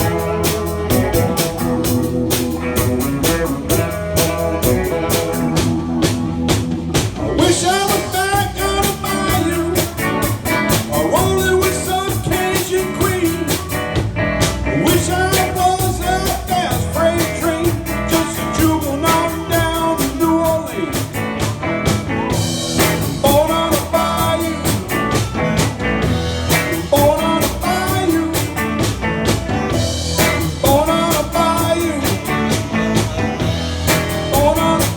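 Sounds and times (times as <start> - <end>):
band playing blues-rock: 0.0 - 34.9
person singing: 7.2 - 14.0, 14.7 - 21.2, 22.2 - 34.9.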